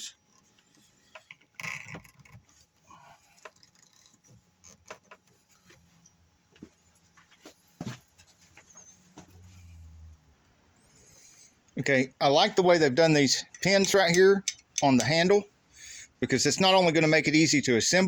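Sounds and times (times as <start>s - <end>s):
plastic parts clicking and knocking: 1.0s - 2.6s, 3.3s - 5.3s, 13.5s - 15.2s.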